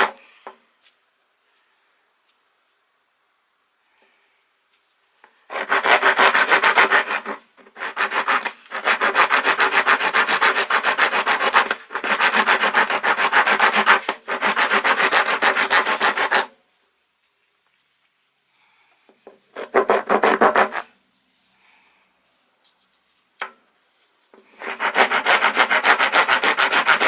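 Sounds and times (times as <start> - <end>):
rasp filing wood: 5.5 - 16.5, 19.5 - 20.8, 24.5 - 27.0.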